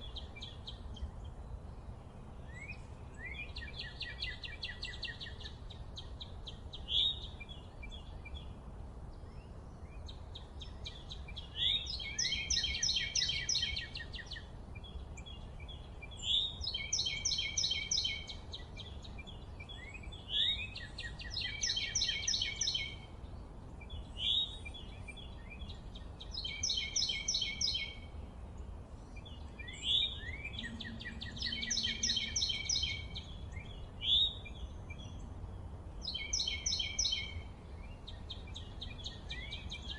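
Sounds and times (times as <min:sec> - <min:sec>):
songbird singing: 0:00.0 - 0:39.9
steady low rumble: 0:27.9 - 0:36.2.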